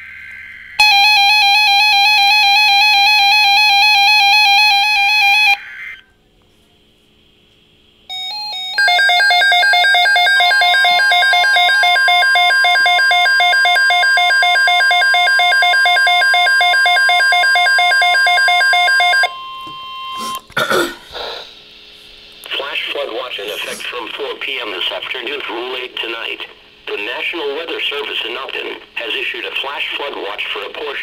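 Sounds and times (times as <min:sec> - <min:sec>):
pulsing alarm beep: 0:00.1 - 0:05.6, 0:08.1 - 0:20.2
steady warning alarm tone: 0:00.1 - 0:05.6, 0:08.1 - 0:20.4.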